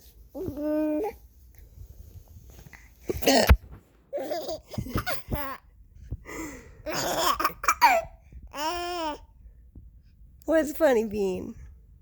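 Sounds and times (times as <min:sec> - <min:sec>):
woman hiccuping: 0:03.2 - 0:03.6
baby laughing: 0:04.1 - 0:05.7, 0:06.9 - 0:09.2.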